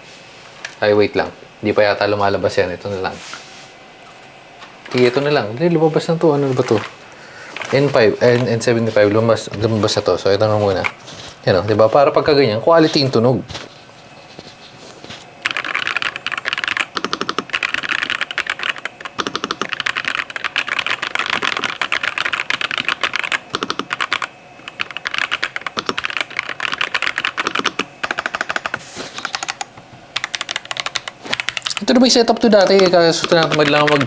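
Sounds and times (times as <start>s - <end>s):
mechanical keyboard typing: 4.8s - 5.4s, 6.4s - 6.9s, 15.4s - 34.0s.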